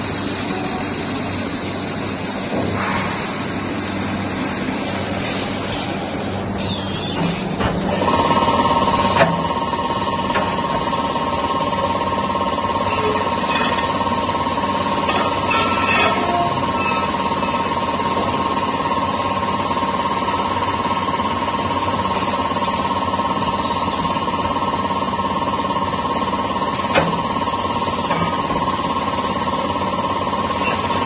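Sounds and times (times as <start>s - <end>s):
drilling machine whining: 9.9s - 20.7s.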